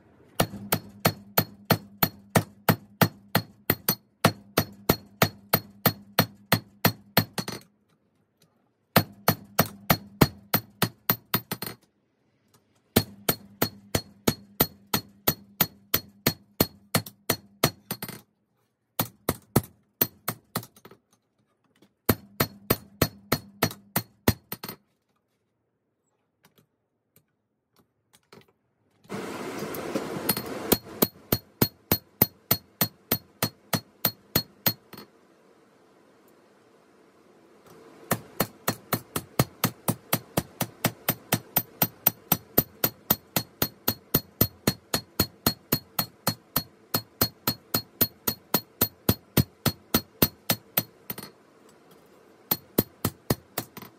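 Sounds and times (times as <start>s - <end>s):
hammer striking steel on anvil: 0.4s - 7.6s, 9.0s - 11.7s, 13.0s - 18.1s, 22.1s - 24.7s, 30.3s - 35.1s, 38.1s - 51.4s, 52.5s - 53.9s.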